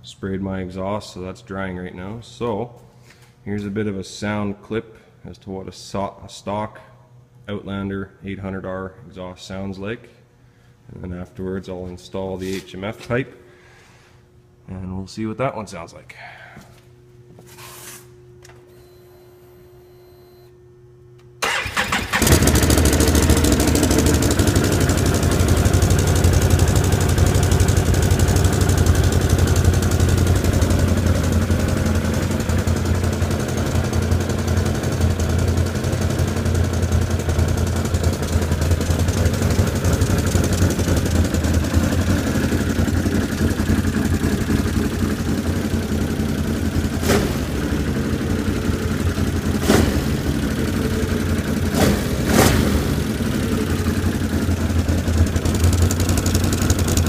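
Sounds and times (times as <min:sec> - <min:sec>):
quad bike engine idling: 0:21.5 - 0:57.0.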